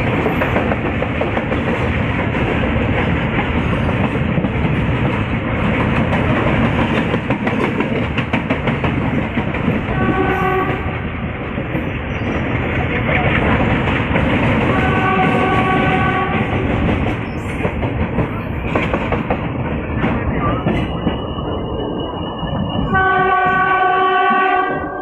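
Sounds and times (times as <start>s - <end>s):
wheels clicking over rail joints: 0.0s - 21.3s
diesel locomotive rumbling: 0.0s - 25.0s
locomotive horn: 9.9s - 11.0s, 14.7s - 16.5s, 22.9s - 25.0s.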